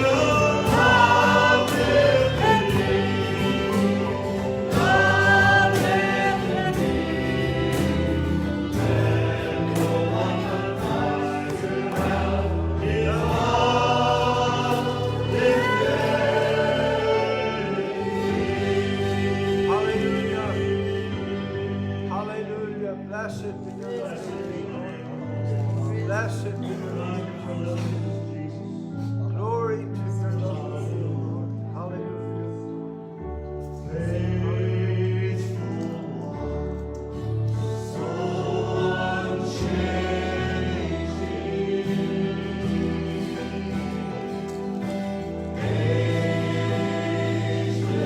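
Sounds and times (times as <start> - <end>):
person singing: 0.0 - 22.2
group singing slow worship song: 0.0 - 22.7, 23.5 - 29.4, 30.0 - 48.0
sustained keyboard chords: 0.0 - 48.0.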